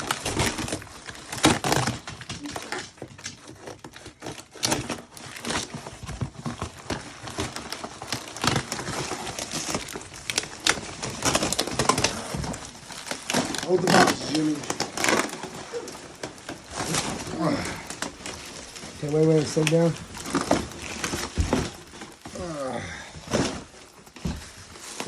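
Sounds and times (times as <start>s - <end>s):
cardboard tearing and scraping: 0.0s - 25.0s
packing crinkling and rustling: 0.0s - 25.0s.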